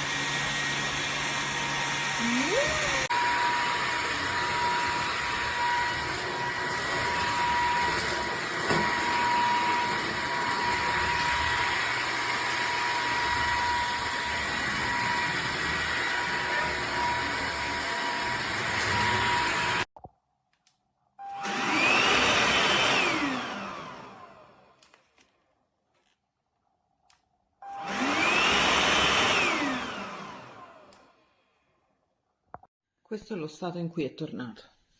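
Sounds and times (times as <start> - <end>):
vacuum motor whining: 0.0 - 19.9, 21.2 - 24.7, 27.6 - 31.1.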